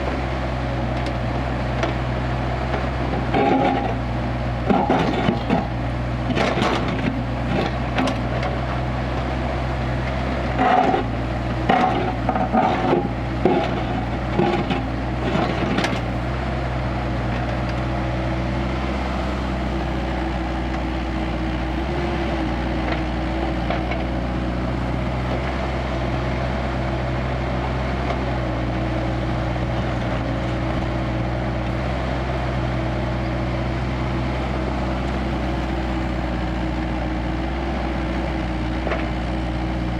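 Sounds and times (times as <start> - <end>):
excavator diesel engine running: 0.0 - 39.9
machine knocks and clunks: 4.7 - 8.6, 10.5 - 16.1.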